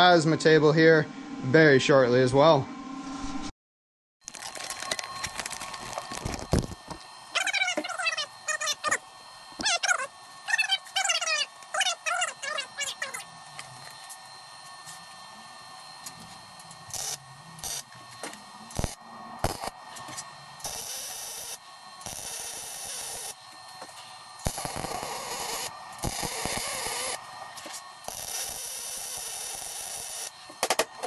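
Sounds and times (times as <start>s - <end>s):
welding arc hiss: 16.8s - 30.8s.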